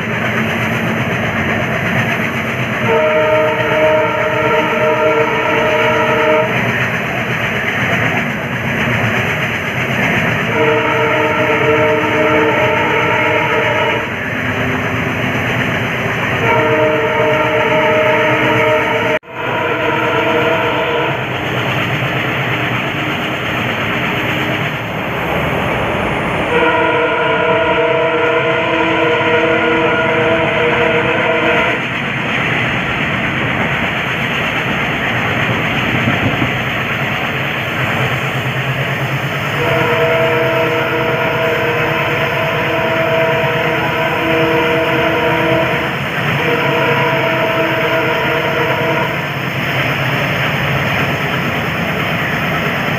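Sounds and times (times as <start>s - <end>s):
train running noise: 0.0s - 52.9s
locomotive horn blasts: 2.7s - 6.6s, 10.4s - 14.3s, 16.2s - 21.3s, 26.5s - 31.8s, 39.5s - 49.4s.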